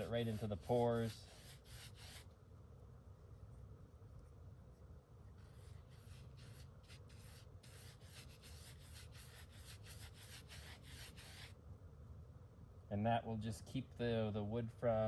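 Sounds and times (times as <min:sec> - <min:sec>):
paintbrush scrubbing wood: 0:00.0 - 0:02.3, 0:05.4 - 0:11.5.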